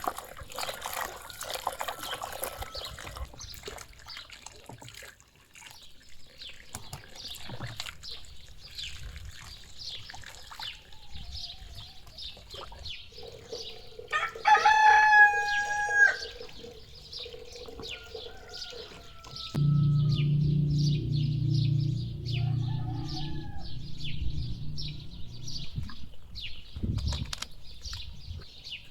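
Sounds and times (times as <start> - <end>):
rooster crowing: 14.1 - 16.3, 17.9 - 25.7
low steady hum: 19.6 - 26.6.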